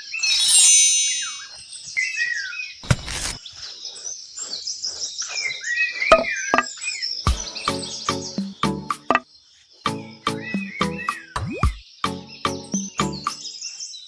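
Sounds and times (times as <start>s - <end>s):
birds chirping: 1.2s - 14.0s
loud whistled bird call: 5.3s - 9.2s, 9.9s - 13.7s.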